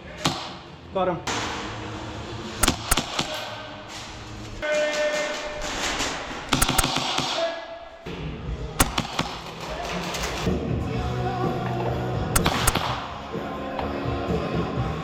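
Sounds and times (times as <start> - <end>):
airsoft gun shots: 2.6 - 8.2, 8.8 - 9.6, 12.4 - 13.3.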